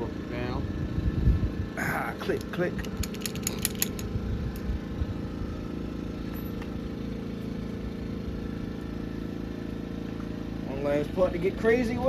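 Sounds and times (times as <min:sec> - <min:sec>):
low mechanical hum: 0:00.0 - 0:12.0
torque wrench ratcheting clicks: 0:02.3 - 0:04.7.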